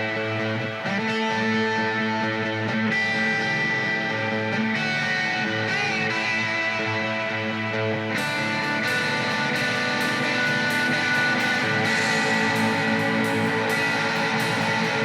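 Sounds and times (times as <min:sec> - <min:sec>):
bass guitar: 0:00.0 - 0:15.0
electric guitar chords: 0:00.0 - 0:15.0
drums with cymbal strokes: 0:08.2 - 0:15.0.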